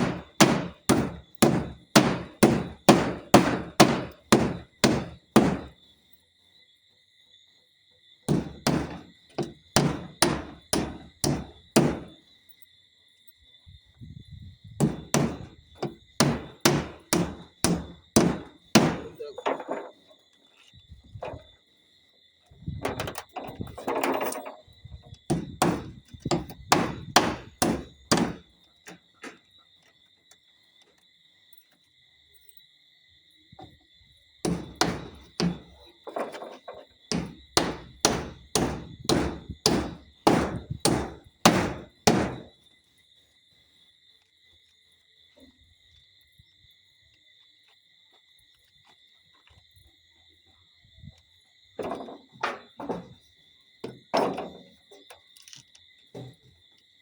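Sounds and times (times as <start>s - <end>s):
hammer driving nails: 0.0s - 5.8s, 8.3s - 12.2s, 14.8s - 19.8s, 25.3s - 28.5s, 34.4s - 36.5s, 37.1s - 42.5s.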